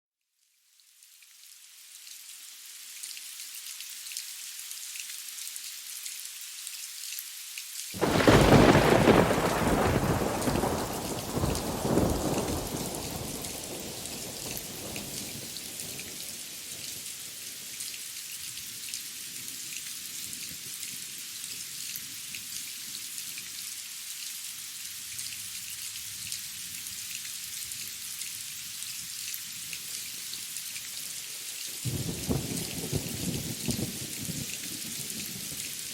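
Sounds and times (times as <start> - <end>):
steady rain falling: 0.5 - 35.9
thunderclap rumbling: 8.0 - 15.5, 31.9 - 34.4.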